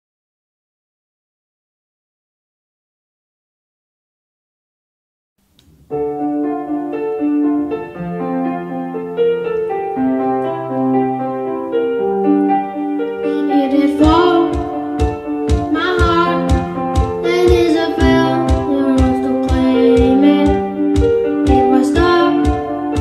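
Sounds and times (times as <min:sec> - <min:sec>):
keyboard sustained chords: 0:05.6 - 0:23.0
young person singing: 0:13.2 - 0:23.0
drum kit steady beat: 0:14.0 - 0:23.0.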